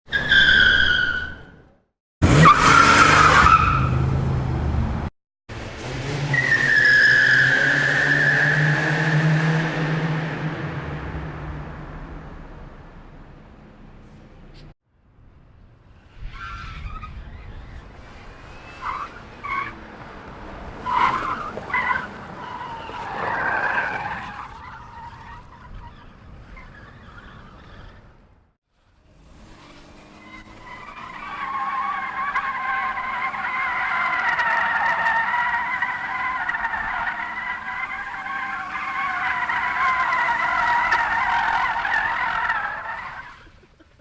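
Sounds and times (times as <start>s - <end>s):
car tires screeching: 0.1s - 1.6s, 2.2s - 4.4s, 5.8s - 11.5s, 16.2s - 28.2s, 29.1s - 44.0s.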